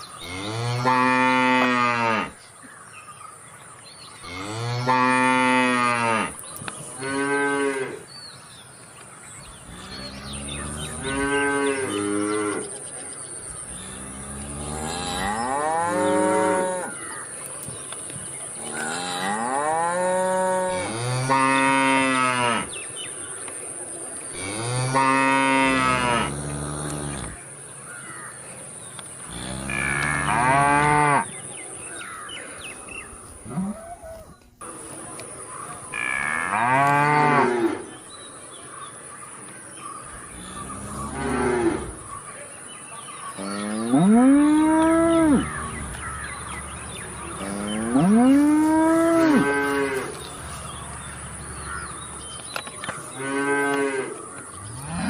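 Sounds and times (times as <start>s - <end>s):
cow mooing: 0.2s - 2.4s, 13.8s - 17.0s, 18.7s - 22.7s, 24.4s - 27.4s, 29.3s - 31.3s, 43.4s - 52.1s, 53.2s - 55.0s.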